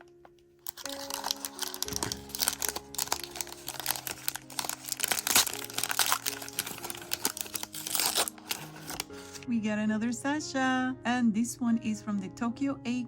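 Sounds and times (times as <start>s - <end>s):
packaging crinkling and rustling: 0.0s - 9.4s
soft background music: 0.0s - 13.0s.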